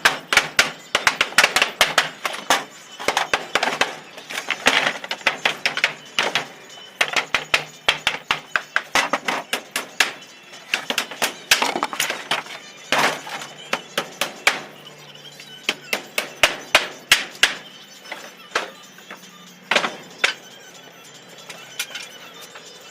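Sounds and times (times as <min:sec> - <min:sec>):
boards cracking and scraping: 0:00.0 - 0:14.7.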